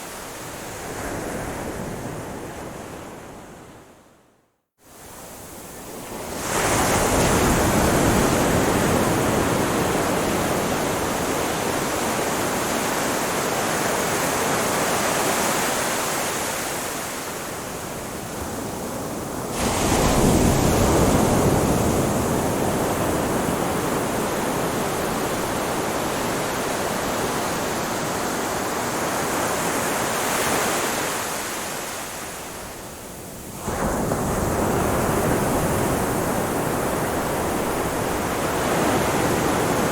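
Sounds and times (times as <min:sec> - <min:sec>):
ocean surf breaking: 0:19.2 - 0:32.4, 0:33.6 - 0:39.9.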